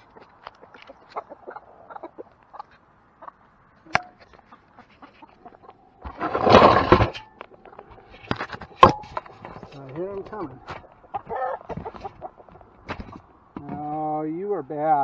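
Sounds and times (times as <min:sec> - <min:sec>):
chickens clucking: 0:00.0 - 0:15.0
loud rustling: 0:06.1 - 0:07.2.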